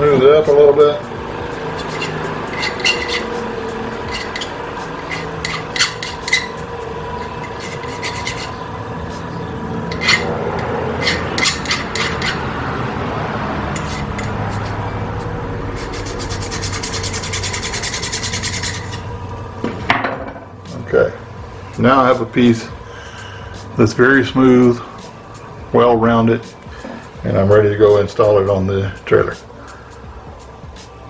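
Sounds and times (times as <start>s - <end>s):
metal bar rasping on a file: 1.6s - 12.7s, 13.7s - 19.2s.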